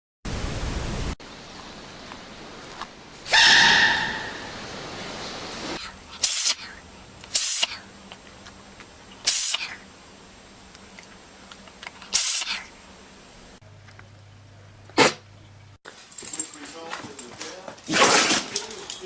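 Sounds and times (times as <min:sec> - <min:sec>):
animal sneezing: 0:05.8 - 0:07.9, 0:09.2 - 0:09.8, 0:12.1 - 0:12.7, 0:15.0 - 0:15.2.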